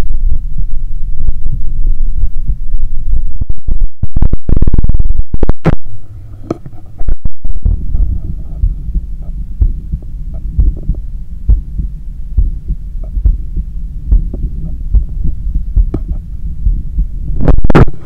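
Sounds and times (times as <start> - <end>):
heartbeat through stethoscope: 7.5 - 18.0.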